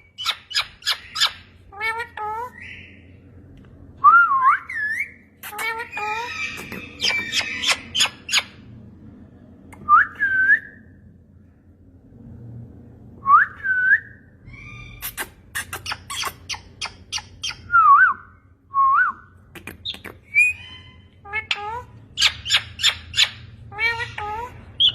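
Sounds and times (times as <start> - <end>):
parrot squawks: 4.8 - 8.6.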